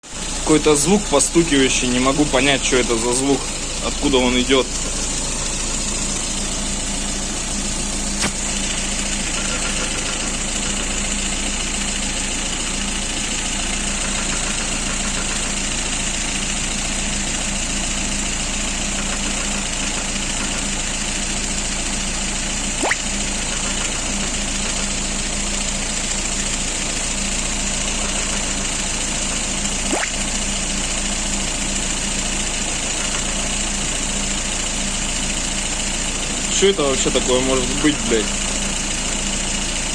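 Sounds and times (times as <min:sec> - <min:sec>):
car engine idling: 0:00.0 - 0:39.9
sharp engine knocks: 0:08.1 - 0:11.0.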